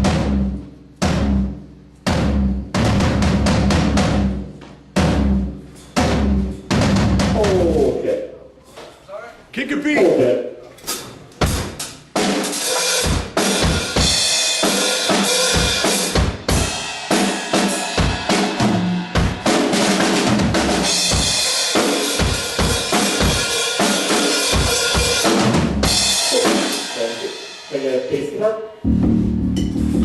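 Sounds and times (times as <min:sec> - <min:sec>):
cymbals: 0:11.4 - 0:30.0.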